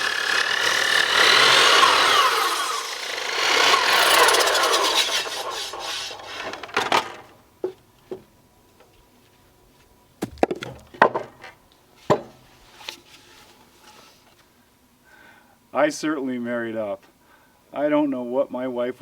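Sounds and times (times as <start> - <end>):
miter saw cutting wood: 0.0 - 7.0
wood knocking on wood: 10.2 - 11.5.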